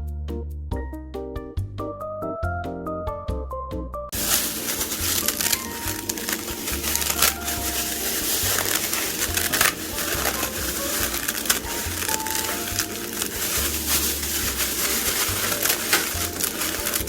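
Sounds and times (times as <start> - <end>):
quiet background music: 3.8 - 17.0
dry noodles crunching: 4.2 - 17.0
packaging crinkling: 4.2 - 17.0.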